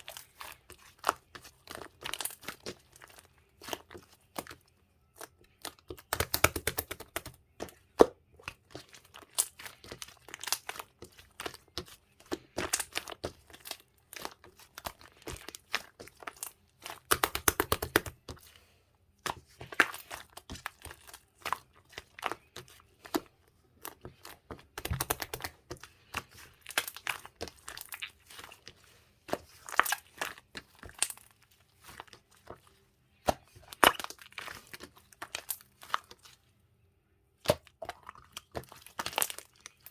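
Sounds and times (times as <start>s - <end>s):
hands squishing slime: 0.0s - 36.5s, 37.3s - 39.9s
sticky crackling and popping clicks: 5.9s - 7.4s, 17.0s - 18.2s, 24.8s - 25.6s.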